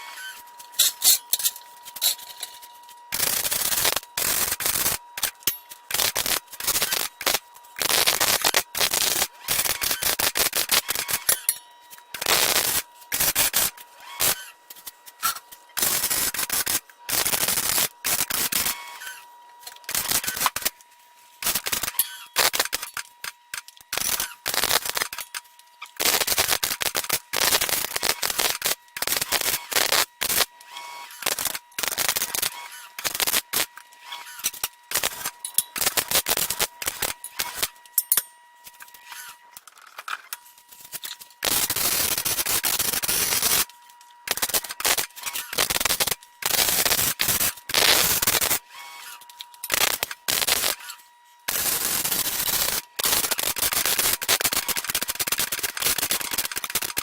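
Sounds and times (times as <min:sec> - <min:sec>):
welding arc crackling: 0:03.1 - 0:11.4, 0:12.1 - 0:14.4, 0:15.2 - 0:18.8, 0:19.8 - 0:20.8, 0:21.4 - 0:30.5, 0:31.2 - 0:37.8, 0:40.8 - 0:43.7, 0:44.3 - 0:48.6, 0:49.6 - 0:50.9, 0:51.5 - 0:57.0.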